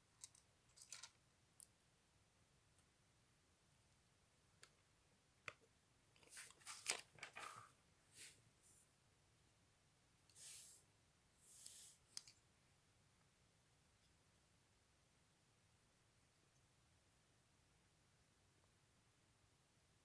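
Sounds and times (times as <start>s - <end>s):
plastic pieces clicking and rustling: 0.2s - 1.2s.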